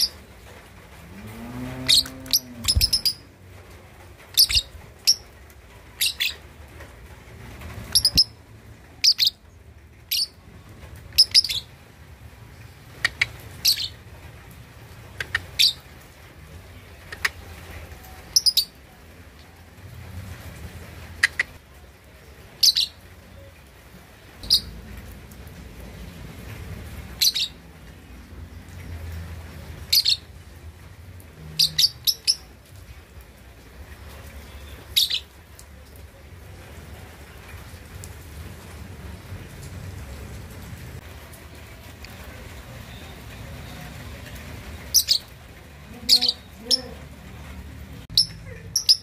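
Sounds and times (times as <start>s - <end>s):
lovebird chirping: 1.6s - 3.3s, 4.3s - 5.3s, 6.0s - 6.4s, 7.8s - 8.4s, 9.0s - 9.4s, 10.1s - 10.4s, 11.2s - 11.7s, 12.6s - 14.0s, 18.3s - 18.8s, 22.6s - 23.5s, 24.4s - 24.8s, 27.2s - 27.6s, 29.8s - 30.3s, 31.5s - 32.5s, 34.5s - 35.3s, 44.9s - 47.0s, 48.1s - 49.0s.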